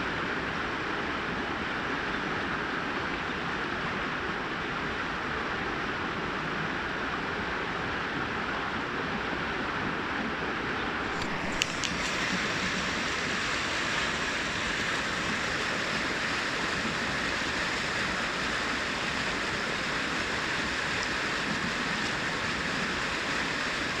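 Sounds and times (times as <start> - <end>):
brook water rushing: 0.0 - 24.0
brief clicks: 11.1 - 12.2.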